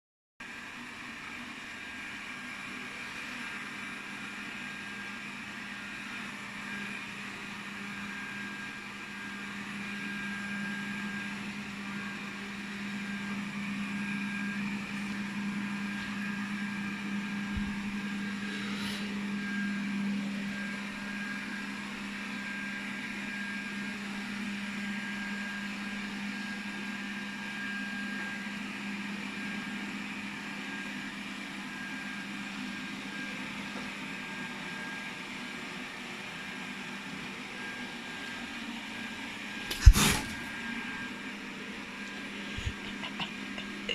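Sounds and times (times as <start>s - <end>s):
robot vacuum motor humming: 42.0s - 43.9s.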